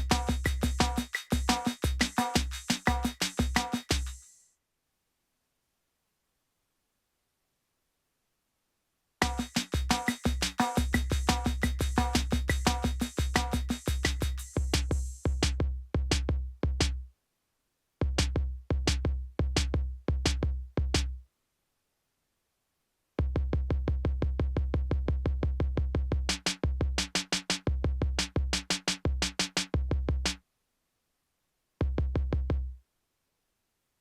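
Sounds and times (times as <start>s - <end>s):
stuttering drum roll: 0.0s - 4.2s, 9.2s - 16.8s.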